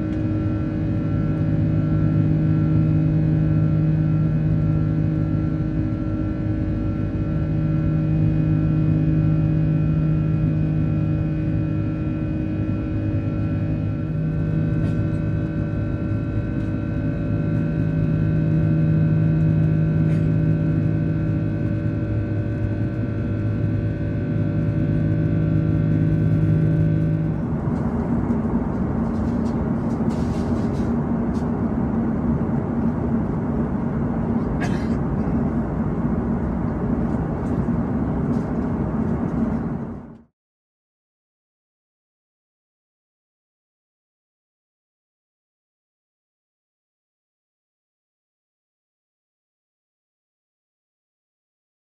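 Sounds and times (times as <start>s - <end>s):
aircraft cabin engine drone: 0.0s - 40.3s.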